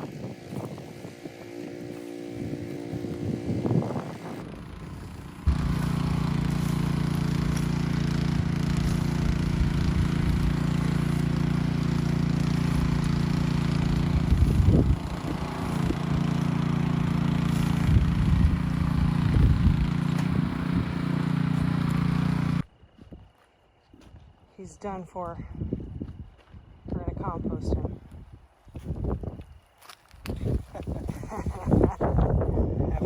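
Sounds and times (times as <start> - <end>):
rototiller engine running: 0.0 - 22.7, 30.4 - 33.0.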